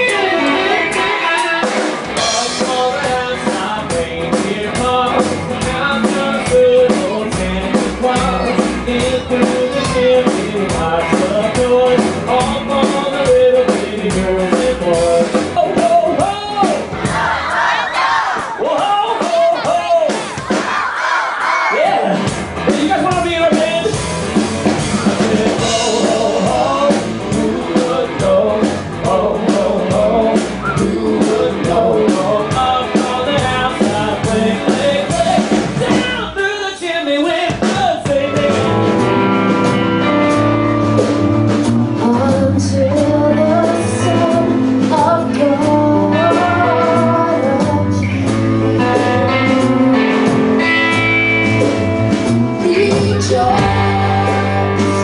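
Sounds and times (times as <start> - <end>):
person singing: 0.0 - 16.9, 24.9 - 39.2, 41.9 - 50.8, 52.3 - 55.0
blues-rock band playing: 0.0 - 55.0.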